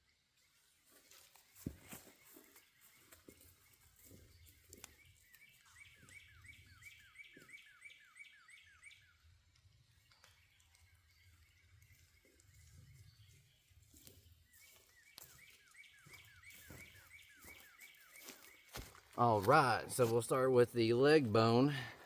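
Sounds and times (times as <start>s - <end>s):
faint footsteps on ground: 0.8s - 8.0s, 11.8s - 22.0s
faint songbird whistling: 2.0s - 9.3s, 10.1s - 19.0s.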